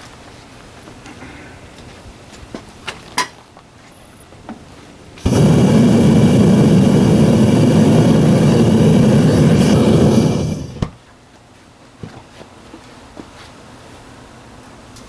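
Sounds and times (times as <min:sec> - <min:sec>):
furnace burner rushing: 0:05.2 - 0:11.0.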